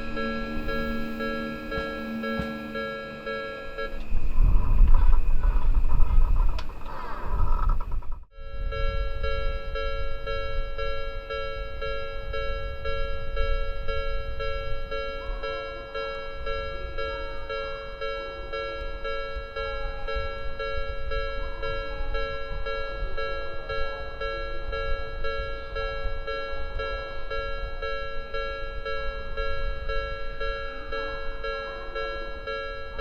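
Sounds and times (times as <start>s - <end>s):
crossing warning bell ringing: 0.0s - 6.6s, 8.3s - 33.0s
low rumble: 0.0s - 8.3s
train wheels rumbling: 0.0s - 8.3s.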